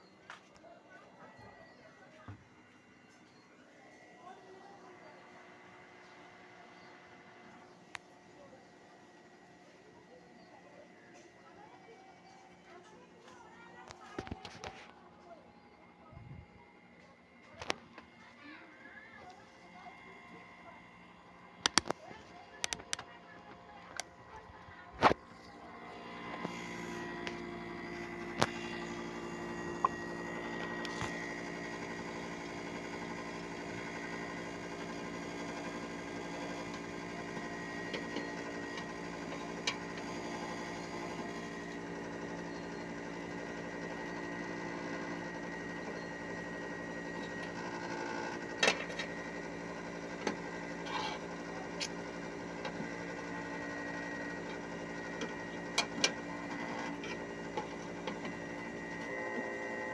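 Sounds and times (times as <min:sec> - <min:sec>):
air conditioner hum and whine: 0:00.0 - 0:59.9
sharp clicks: 0:21.6 - 0:22.0.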